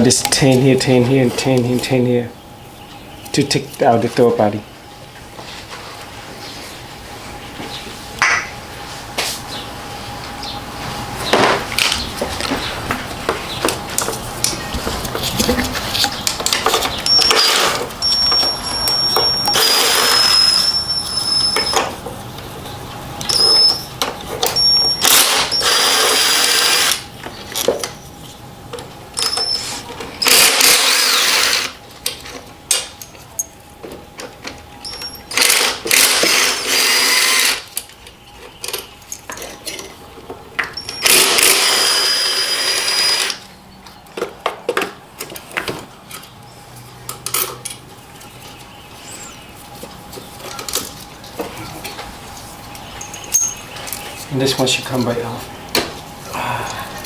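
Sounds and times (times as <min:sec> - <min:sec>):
power driver whining: 0:16.0 - 0:22.1, 0:23.2 - 0:27.1, 0:29.1 - 0:31.8, 0:34.8 - 0:37.7, 0:40.8 - 0:43.5.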